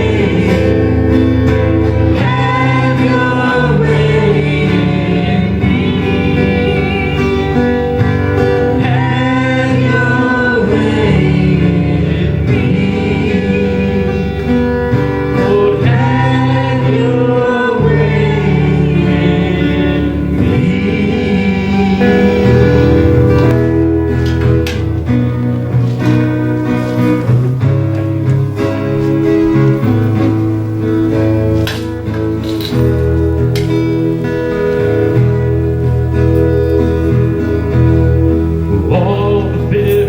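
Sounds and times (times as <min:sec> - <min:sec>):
voices singing gospel song: 0:00.0 - 0:24.6, 0:38.6 - 0:40.0
band with guitar: 0:00.0 - 0:40.0.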